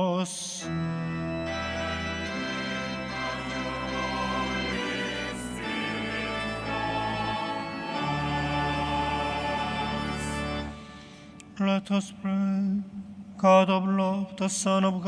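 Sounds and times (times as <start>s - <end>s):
organ accompaniment: 0.0s - 11.9s
choir chanting: 0.8s - 11.1s.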